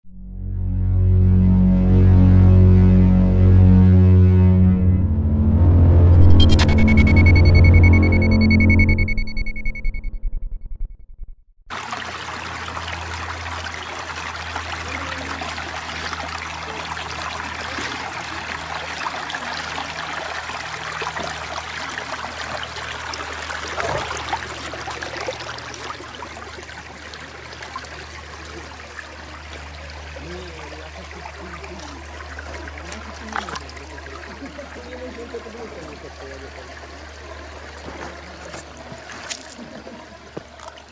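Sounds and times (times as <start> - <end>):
low hum: 0.0 - 11.7
creek water running: 11.7 - 40.9.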